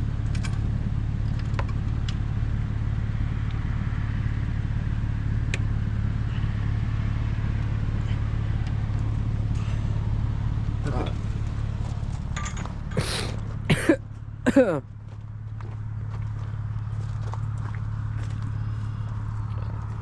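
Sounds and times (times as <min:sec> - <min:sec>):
vehicle engine idling: 0:15.2 - 0:20.0.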